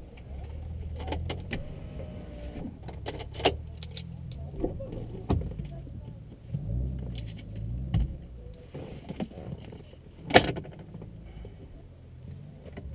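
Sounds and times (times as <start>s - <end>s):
car engine droning: 0.0s - 12.9s.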